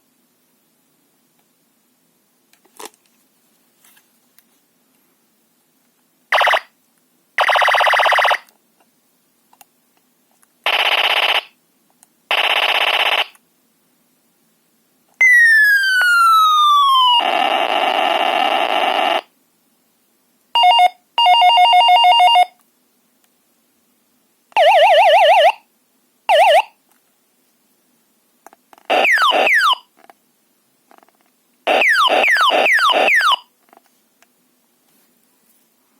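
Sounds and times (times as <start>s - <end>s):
falling whistle: 15.2s - 17.2s
warbling siren-like tones: 28.9s - 29.8s, 31.7s - 33.4s.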